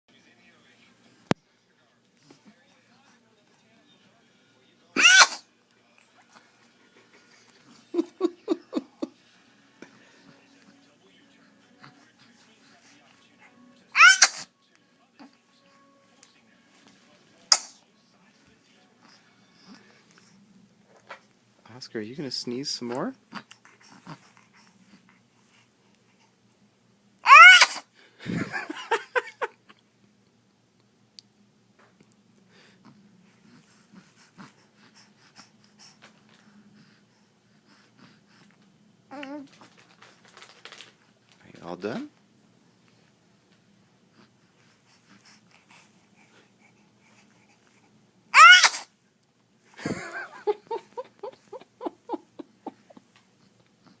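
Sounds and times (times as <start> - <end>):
baby laughing: 5.0 - 5.4, 14.0 - 14.4, 27.2 - 27.8, 48.4 - 48.8, 49.8 - 53.2
infant sneezing: 5.0 - 5.5, 14.0 - 14.5, 17.5 - 17.8, 27.2 - 27.9, 48.4 - 48.9.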